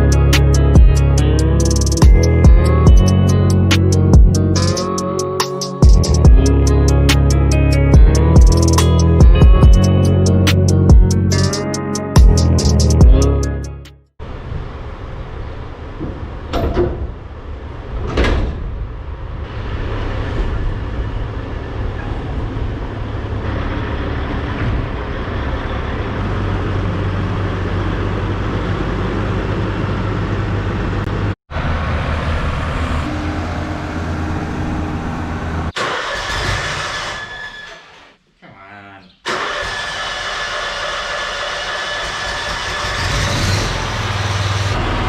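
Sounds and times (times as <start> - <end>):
tractor engine running: 0.0 - 13.9, 39.3 - 45.0.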